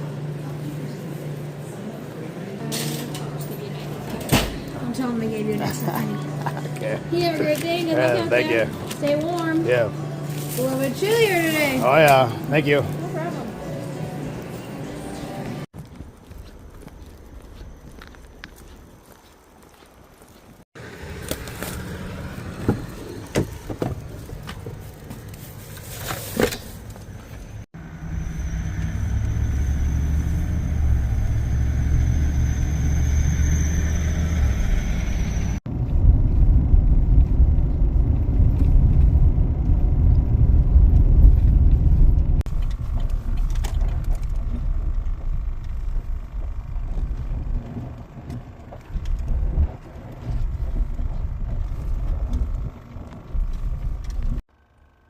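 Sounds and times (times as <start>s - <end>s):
vehicle engine and road rumble: 0.0s - 55.0s
thin high whine: 27.8s - 35.6s.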